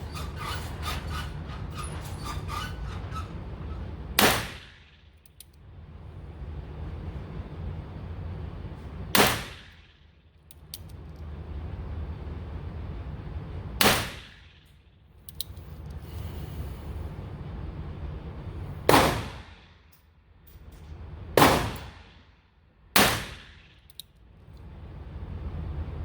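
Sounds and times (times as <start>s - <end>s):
steady low hum: 0.0s - 26.0s
faint small clicks: 15.2s - 16.0s.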